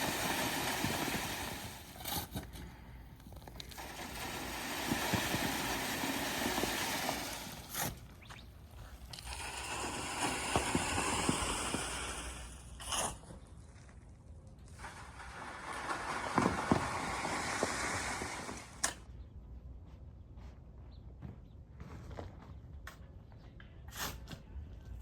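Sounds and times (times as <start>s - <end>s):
clay scraping through a screen: 0.7s - 2.8s, 3.4s - 8.2s.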